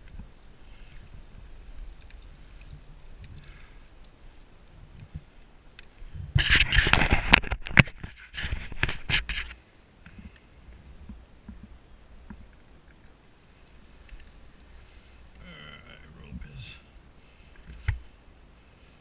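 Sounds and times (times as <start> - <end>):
faint hiss: 0.0 - 6.6, 9.4 - 19.0
sharp scratchy cracks: 5.8 - 10.4
rough scraping and rubbing: 6.3 - 9.6.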